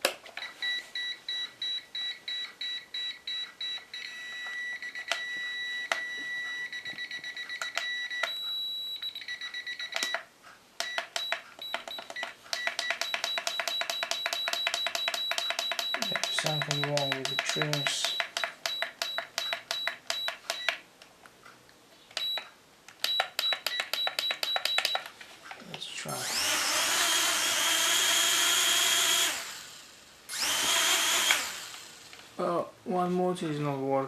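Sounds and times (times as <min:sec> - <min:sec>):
electronic transmitter beeps: 0:00.4 - 0:20.8, 0:22.2 - 0:25.1.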